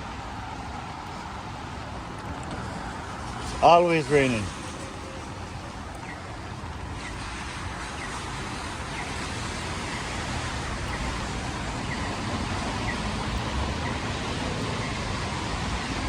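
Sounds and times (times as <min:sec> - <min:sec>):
rain: 0:00.0 - 0:16.0
tyres hissing on wet road: 0:00.0 - 0:16.0.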